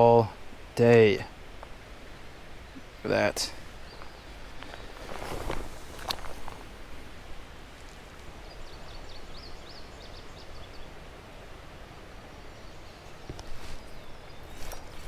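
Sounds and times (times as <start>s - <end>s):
creek water flowing: 0.3s - 8.4s
small bird singing: 2.6s - 6.8s, 8.4s - 11.0s, 12.3s - 15.0s.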